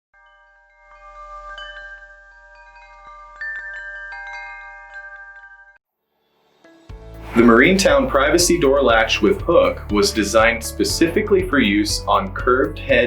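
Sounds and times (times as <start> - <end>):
wind chimes ringing: 0.2 - 5.8.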